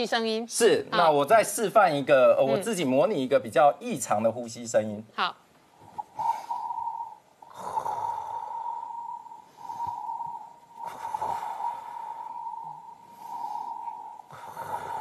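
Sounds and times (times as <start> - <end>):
steady high whine: 5.7 - 15.0
laboured breathing: 5.8 - 15.0.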